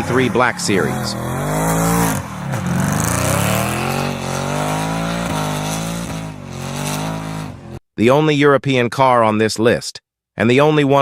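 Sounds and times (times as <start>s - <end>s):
car engine revving: 0.0s - 7.8s.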